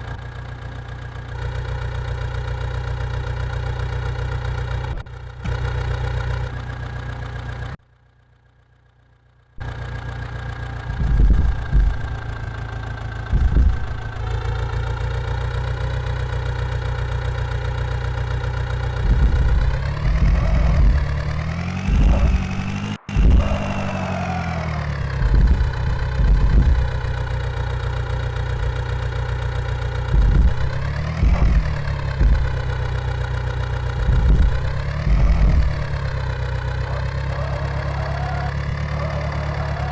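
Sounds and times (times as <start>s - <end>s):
vehicle engine idling and revving: 0.0s - 39.9s
low knocks: 10.9s - 12.6s, 13.2s - 14.4s, 18.9s - 24.1s, 25.0s - 27.6s, 30.0s - 37.3s.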